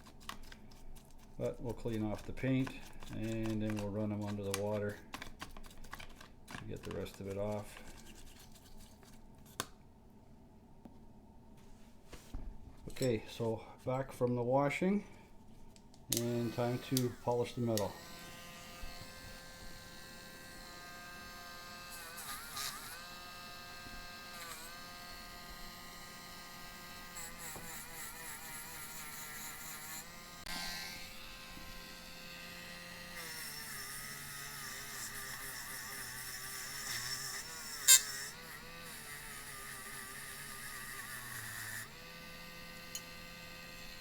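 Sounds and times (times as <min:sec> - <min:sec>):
rotary tool whining on metal: 0:16.1 - 0:44.0.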